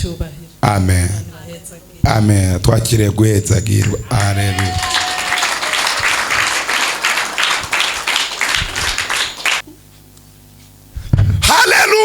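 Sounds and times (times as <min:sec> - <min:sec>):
faint low hum: 0:00.0 - 0:11.5
congregation clapping: 0:03.6 - 0:09.7.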